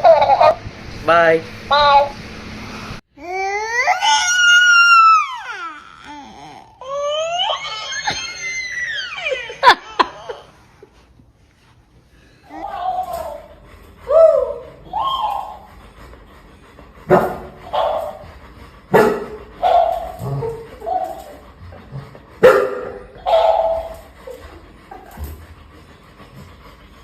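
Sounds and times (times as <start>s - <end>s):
talking toy yelping: 3.4s - 6.2s, 6.8s - 9.8s.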